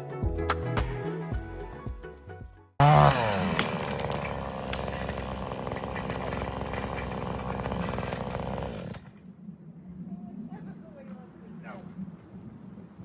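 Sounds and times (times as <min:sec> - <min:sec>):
chainsaw engine at high revs: 0:02.8 - 0:09.2.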